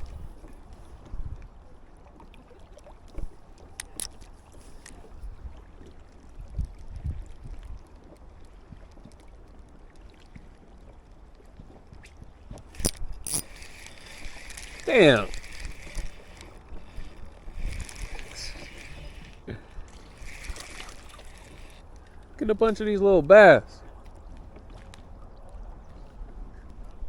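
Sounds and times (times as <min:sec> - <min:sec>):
faint clicks and knocks: 0:03.1 - 0:05.2, 0:12.5 - 0:22.4
wind buffeting microphone: 0:06.3 - 0:07.8.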